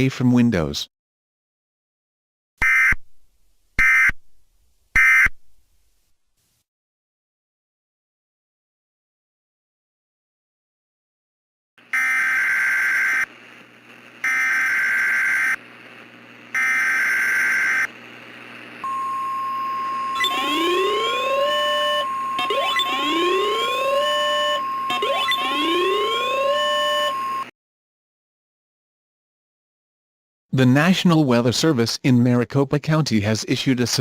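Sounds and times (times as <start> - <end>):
steady warning alarm tone: 11.9 - 13.3, 14.2 - 15.6, 16.6 - 17.9, 18.8 - 27.5
data bursts: 16.6 - 17.9, 18.8 - 27.5
rising whooping siren: 18.9 - 27.5.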